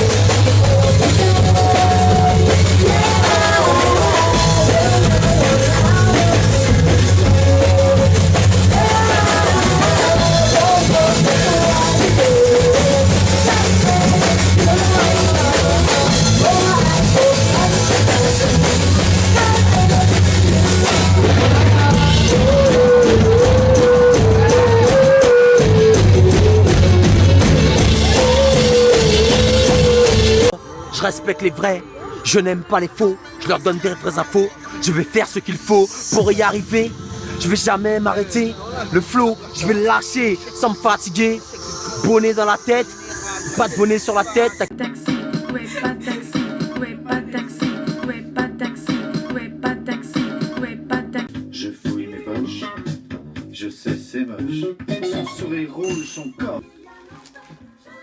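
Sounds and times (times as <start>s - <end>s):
drum kit: 0.0s - 30.6s
loud rock music: 0.0s - 49.4s
person singing: 0.0s - 53.0s.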